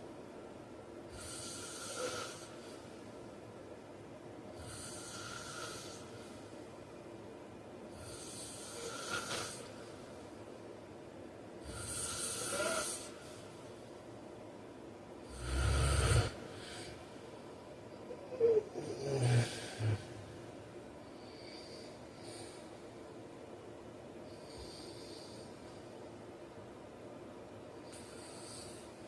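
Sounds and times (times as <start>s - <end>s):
man snoring: 1.1s - 2.6s, 4.6s - 6.1s, 8.0s - 9.8s, 11.6s - 13.2s, 15.2s - 17.0s, 18.3s - 20.2s.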